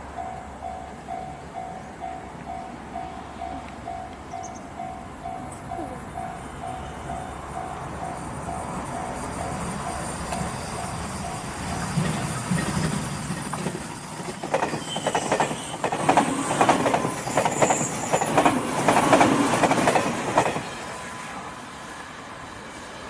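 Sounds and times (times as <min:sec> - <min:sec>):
train wheels clattering over rails: 0:09.0 - 0:20.9.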